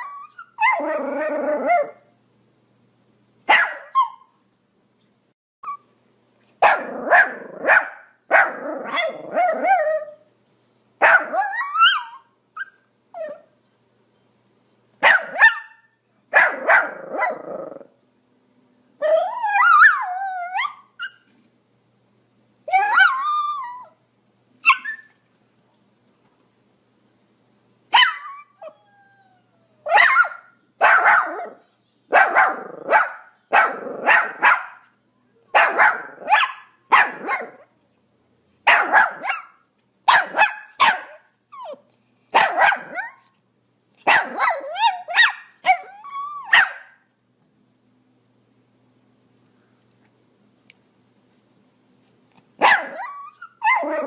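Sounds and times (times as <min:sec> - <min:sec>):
dog whiny yelps: 0:00.0 - 0:02.0, 0:03.5 - 0:04.4, 0:06.6 - 0:10.2, 0:11.0 - 0:13.5, 0:15.0 - 0:17.8, 0:19.0 - 0:21.4, 0:22.7 - 0:24.0, 0:24.6 - 0:25.6, 0:28.0 - 0:34.8, 0:35.6 - 0:37.6, 0:38.7 - 0:43.3, 0:44.1 - 0:47.0, 0:52.6 - 0:54.0
small dog yapping: 0:00.0 - 0:02.0, 0:03.5 - 0:04.3, 0:06.6 - 0:10.2, 0:11.0 - 0:13.4, 0:15.0 - 0:17.9, 0:22.7 - 0:23.9, 0:24.6 - 0:25.2, 0:27.9 - 0:28.8, 0:29.8 - 0:34.8, 0:35.5 - 0:37.7, 0:38.7 - 0:41.8, 0:42.4 - 0:43.3, 0:44.0 - 0:47.0, 0:52.6 - 0:54.0.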